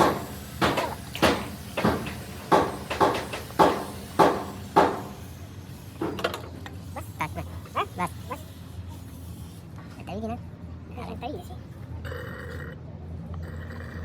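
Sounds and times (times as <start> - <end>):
sharp rhythmic knocks: 0.0 - 5.3.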